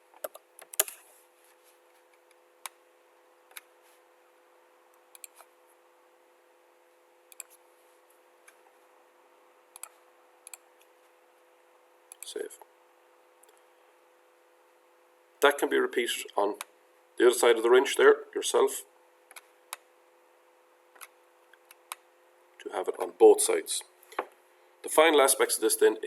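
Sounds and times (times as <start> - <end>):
faint electrical hum: 0.0 - 26.0
computer mouse clicking: 5.1 - 5.5, 7.3 - 7.6, 9.7 - 10.6.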